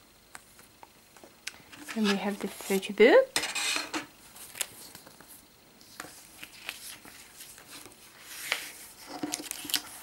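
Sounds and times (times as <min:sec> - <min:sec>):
paper pages rustling: 0:04.3 - 0:10.0.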